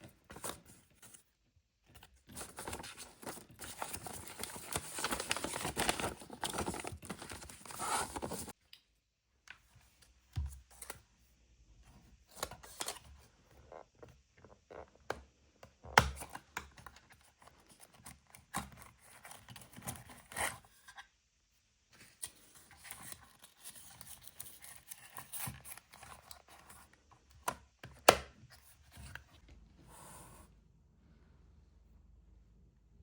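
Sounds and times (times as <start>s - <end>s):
paper rustling and tearing: 2.3s - 8.5s.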